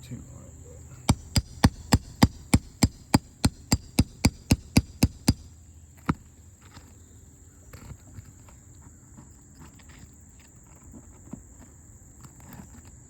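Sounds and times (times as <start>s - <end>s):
hammer striking nail puller: 1.1s - 5.5s.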